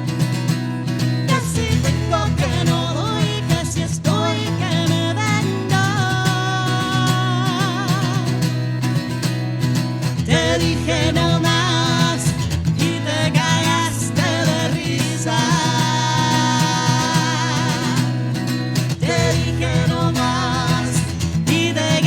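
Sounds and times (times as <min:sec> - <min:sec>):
acoustic guitar: 0:00.0 - 0:22.0.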